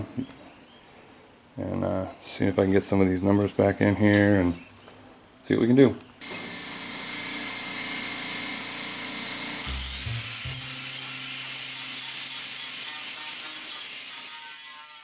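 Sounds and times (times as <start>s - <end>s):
wire wheel grinder scrubbing metal: 6.5s - 15.0s.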